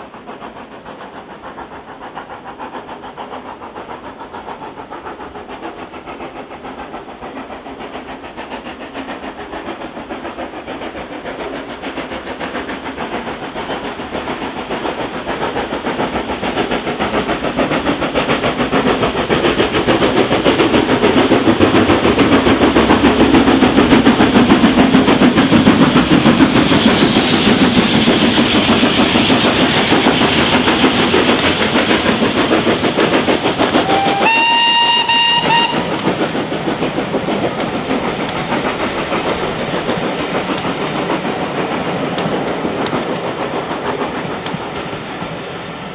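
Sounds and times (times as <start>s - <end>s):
rail noise: 0.0s - 45.9s
steam locomotive passing: 0.0s - 45.9s
steam whistle: 33.8s - 36.0s.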